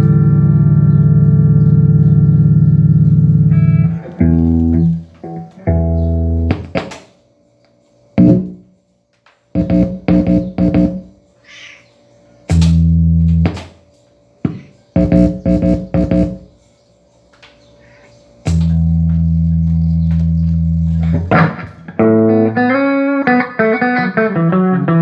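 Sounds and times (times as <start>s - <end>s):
electric guitar chords: 0.0s - 7.0s, 8.2s - 8.6s, 9.6s - 11.1s, 18.5s - 25.0s.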